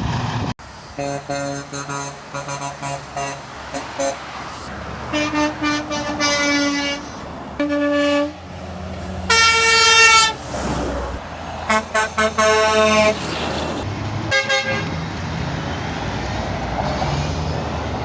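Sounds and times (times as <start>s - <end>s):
low engine rumble: 0.6s - 13.9s
truck air horn honking: 0.6s - 15.0s.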